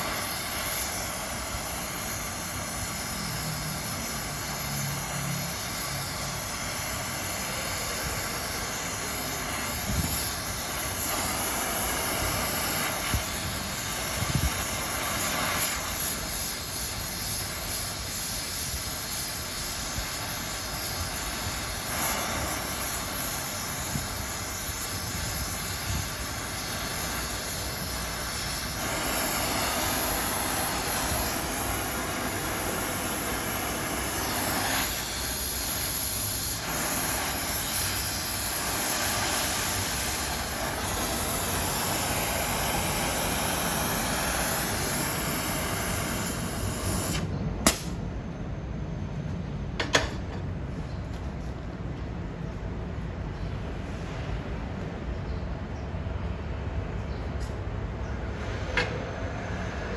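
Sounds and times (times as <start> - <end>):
electric arc welding sizzle: 0.0 - 48.0.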